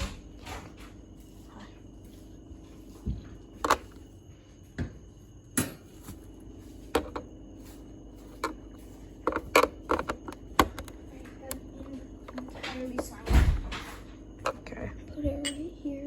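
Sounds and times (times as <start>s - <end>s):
faint steady hum: 0.0s - 16.0s
plastic parts being handled: 6.9s - 7.3s, 8.2s - 11.6s.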